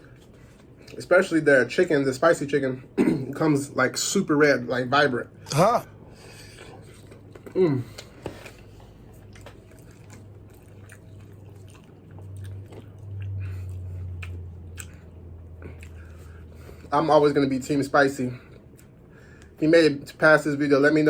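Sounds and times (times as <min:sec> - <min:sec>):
man chewing food: 0:00.0 - 0:01.0, 0:05.4 - 0:16.9, 0:18.5 - 0:19.6
low steady hum: 0:00.0 - 0:21.0.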